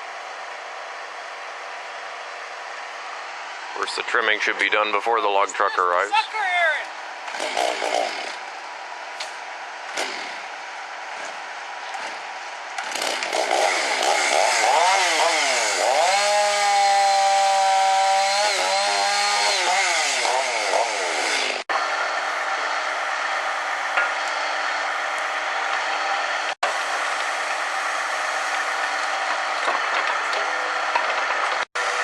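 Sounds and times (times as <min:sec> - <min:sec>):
steady engine running: 0:06.9 - 0:17.1, 0:17.7 - 0:32.0
chainsaw cutting wood: 0:07.2 - 0:08.6, 0:09.2 - 0:21.9.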